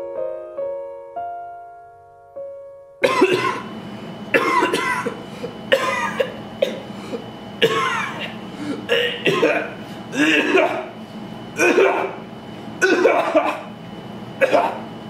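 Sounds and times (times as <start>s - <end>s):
piano notes: 0.0s - 4.0s
person coughing hard: 3.0s - 3.7s, 4.3s - 11.0s, 11.6s - 12.2s, 12.8s - 13.7s, 14.4s - 14.9s.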